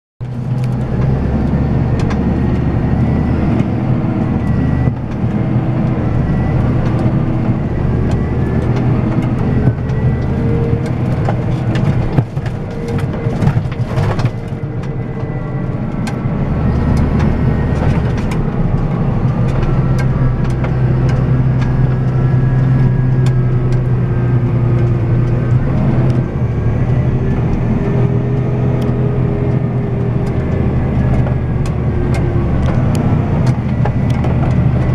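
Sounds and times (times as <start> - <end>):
tractor engine running: 0.2 - 34.9
knocks and rattles: 8.0 - 26.2.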